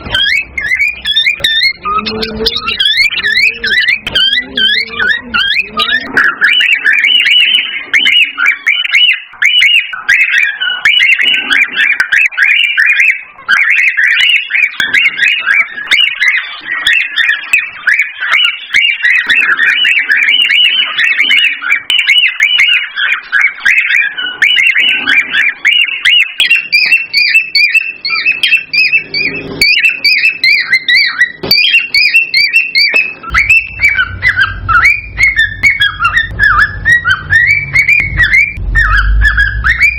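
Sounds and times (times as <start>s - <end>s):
cockatiels chirping and whistling: 0.0s - 39.9s
higher-pitched bird calls: 0.0s - 39.9s
low hum: 33.3s - 39.9s.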